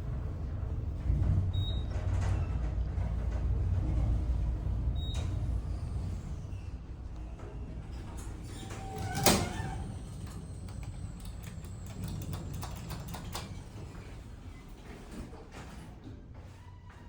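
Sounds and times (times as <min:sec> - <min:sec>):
elevator car rumbling: 0:00.0 - 0:16.0
elevator doors clicking: 0:07.9 - 0:14.2.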